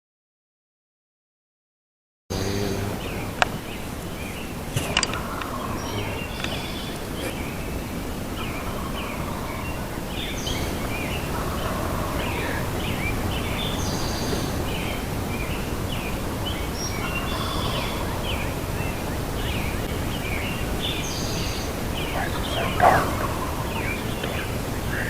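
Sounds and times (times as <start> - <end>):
songbirds chirping and singing: 2.3 - 25.0
steady low rumble: 21.7 - 25.0.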